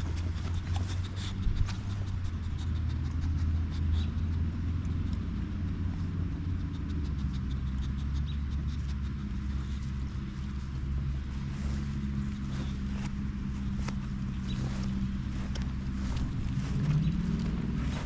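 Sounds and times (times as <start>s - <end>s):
engine humming: 0.0s - 18.0s
light ticks: 0.1s - 10.5s.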